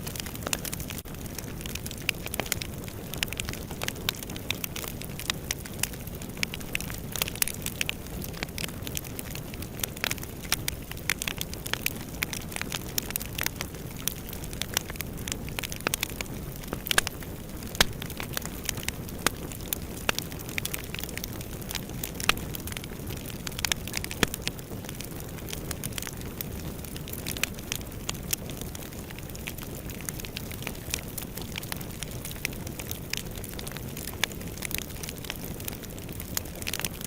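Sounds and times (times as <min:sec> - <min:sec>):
wood fire crackling and popping: 0:00.0 - 0:37.0.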